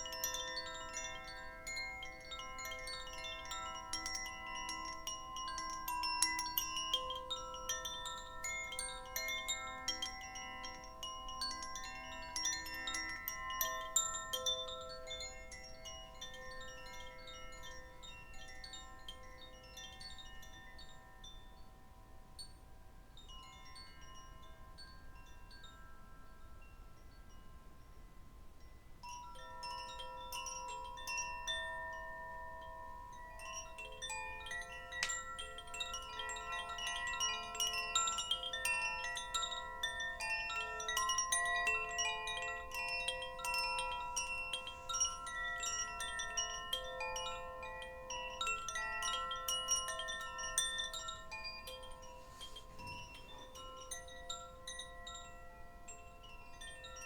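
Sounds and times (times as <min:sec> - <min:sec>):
chimes ringing: 0:33.6 - 0:57.0.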